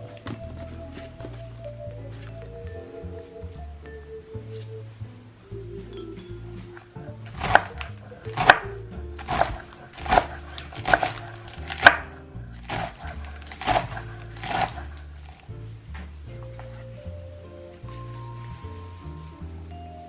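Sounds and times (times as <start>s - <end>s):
knife chopping on cutting board: 7.3s - 14.9s.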